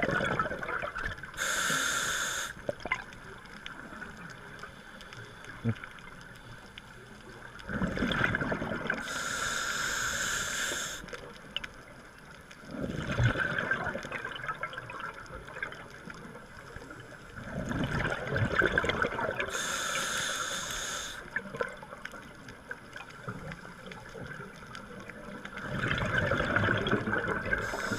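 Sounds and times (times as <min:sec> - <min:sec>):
gurgling exhaled bubbles: 0:00.0 - 0:01.4, 0:07.6 - 0:09.1, 0:12.7 - 0:16.0, 0:17.4 - 0:19.7, 0:25.2 - 0:27.9
regulator hissing: 0:01.4 - 0:02.6, 0:09.0 - 0:11.0, 0:19.5 - 0:21.3, 0:27.6 - 0:27.9.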